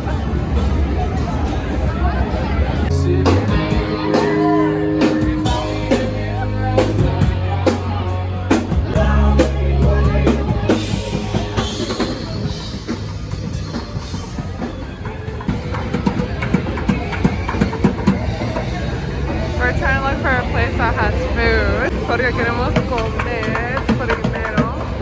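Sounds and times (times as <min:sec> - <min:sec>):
rock music with drums and bass: 0:02.8 - 0:21.0.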